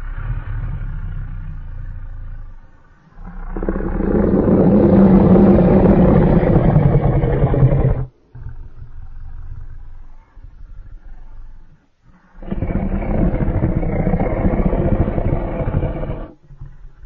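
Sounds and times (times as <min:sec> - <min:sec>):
monster roar: 0:03.2 - 0:08.1, 0:12.4 - 0:16.3.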